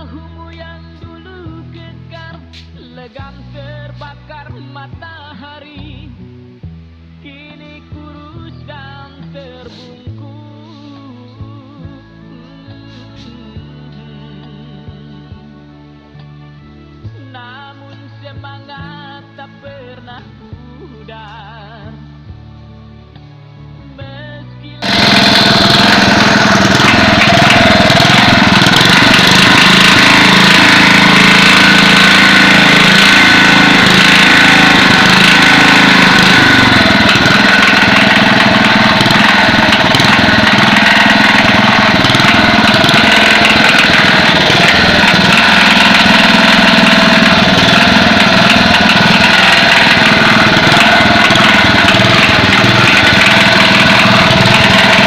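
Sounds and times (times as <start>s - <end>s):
small generator engine running: 9.6s - 10.0s, 24.8s - 55.0s.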